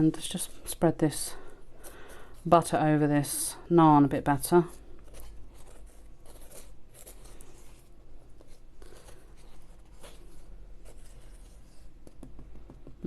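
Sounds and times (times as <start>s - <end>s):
butter knife scraping on naan: 5.1s - 12.0s.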